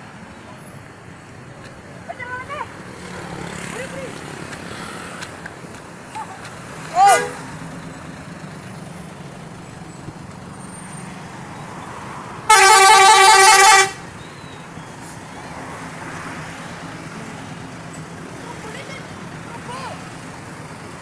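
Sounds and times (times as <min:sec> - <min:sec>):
road traffic hum: 0:00.0 - 0:21.0
warbling multi-tone bus horn: 0:07.0 - 0:07.5, 0:12.5 - 0:14.2.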